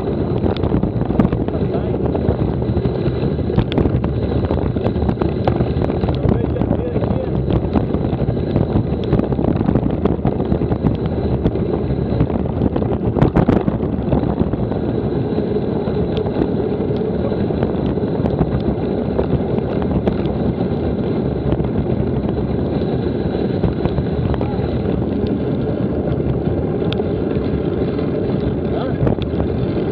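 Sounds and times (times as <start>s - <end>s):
wind buffeting microphone: 0.0s - 29.9s.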